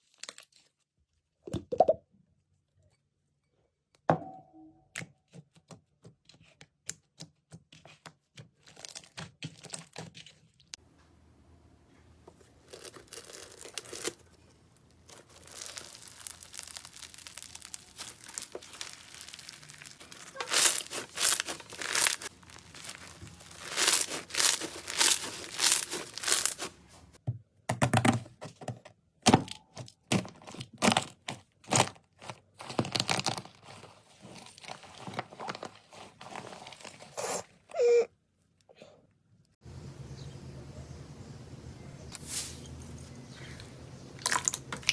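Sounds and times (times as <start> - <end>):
slime crackling when squeezed: 15.0 - 26.7.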